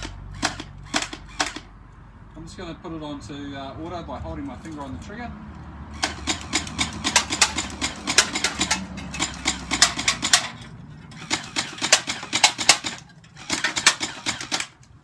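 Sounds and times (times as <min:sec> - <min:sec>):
toy blaster firing full auto: 0:00.0 - 0:01.7, 0:06.0 - 0:10.5, 0:11.2 - 0:14.8.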